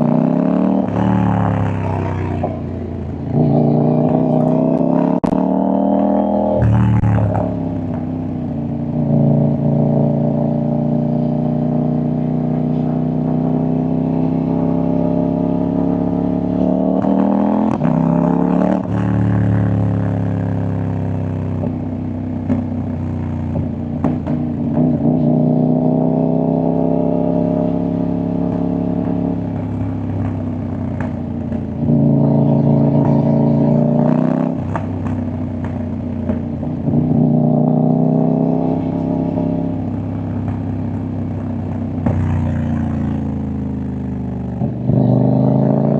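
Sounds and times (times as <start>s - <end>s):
motorcycle engine revving: 0.0s - 45.9s
exhaust pops and crackles: 22.4s - 25.0s, 28.5s - 33.8s, 34.5s - 37.0s, 39.9s - 43.5s.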